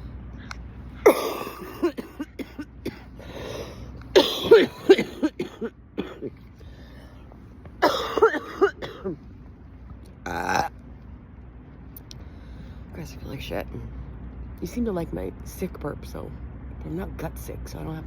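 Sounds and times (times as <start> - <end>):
person hacking coughs: 1.0 - 3.2, 4.1 - 6.4, 7.8 - 9.2.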